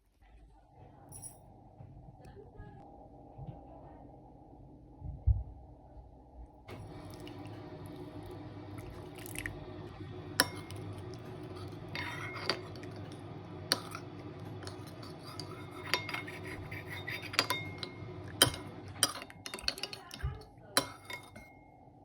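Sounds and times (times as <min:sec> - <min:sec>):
low hum: 0:00.1 - 0:19.6
metal utensil stirring in bowl: 0:06.7 - 0:21.6
utensil clinking against bowl: 0:06.7 - 0:21.7.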